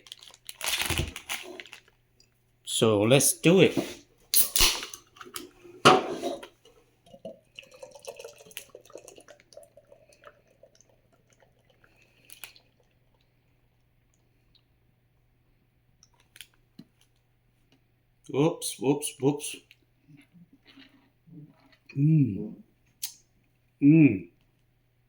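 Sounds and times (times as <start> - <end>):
faint steady hum: 1.1 - 25.0
beer pouring and fizzing: 5.0 - 14.4.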